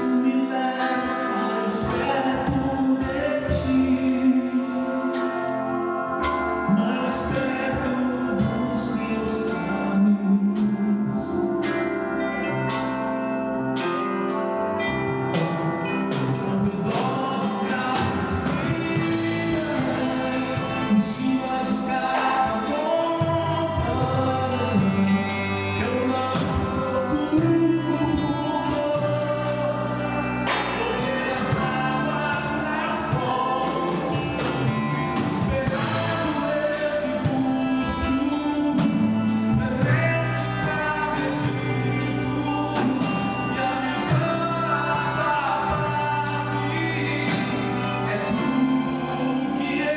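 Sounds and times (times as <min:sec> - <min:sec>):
band playing: 0:00.0 - 0:49.9
group singing gospel: 0:00.0 - 0:49.9
drum and cymbal hits: 0:18.7 - 0:23.4, 0:35.4 - 0:40.5.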